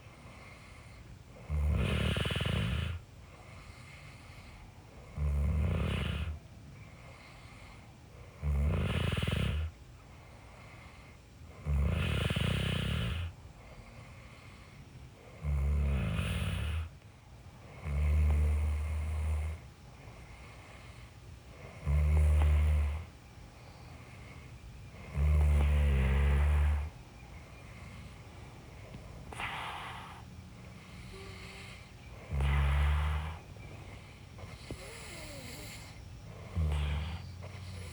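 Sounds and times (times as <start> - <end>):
person snoring: 0.3 - 3.0, 3.8 - 6.4, 8.4 - 9.7, 11.6 - 13.3, 15.4 - 16.9, 21.6 - 23.1, 24.9 - 27.0, 29.3 - 37.9.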